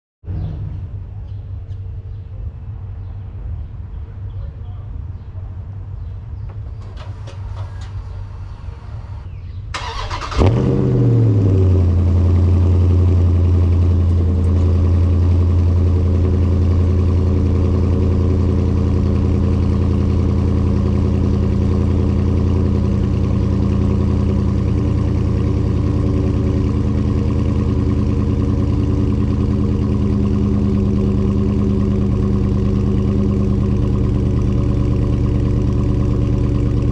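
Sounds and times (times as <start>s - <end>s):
low background rumble: 0.3s - 36.9s
car engine cranking and starting: 6.6s - 36.9s
car engine idling loudly: 11.2s - 36.9s.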